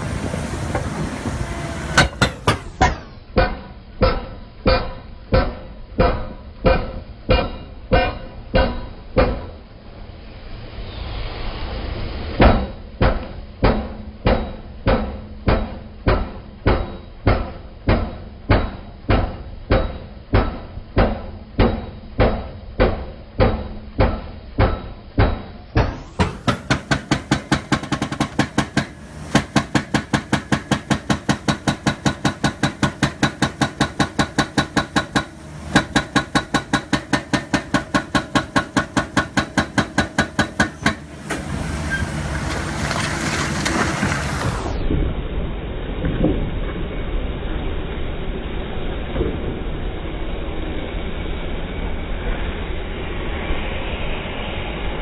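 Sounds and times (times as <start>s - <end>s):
heavy mechanical hammering: 1.9s - 9.6s, 12.4s - 41.5s.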